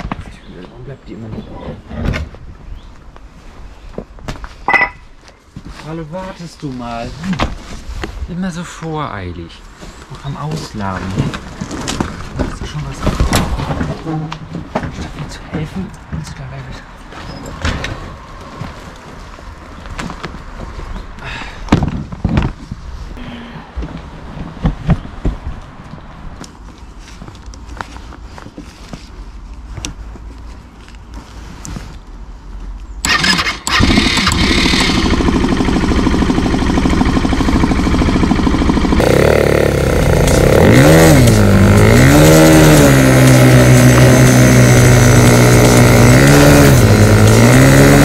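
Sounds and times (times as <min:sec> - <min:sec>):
junk knocking and thumping: 0:11.2 - 0:16.3
quad bike engine: 0:33.0 - 0:48.0.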